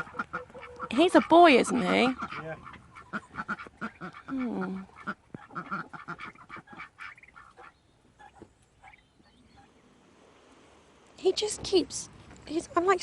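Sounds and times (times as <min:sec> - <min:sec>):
ducks quacking: 0:00.0 - 0:10.0.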